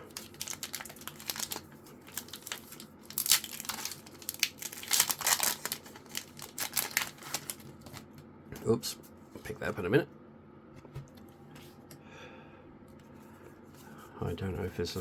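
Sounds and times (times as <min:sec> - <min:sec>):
foil wrapper crinkling and tearing: 0:00.0 - 0:08.2.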